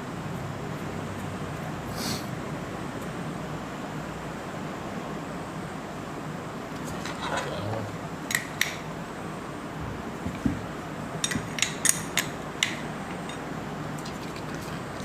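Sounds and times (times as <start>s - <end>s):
dull knock: 10.2s - 10.6s.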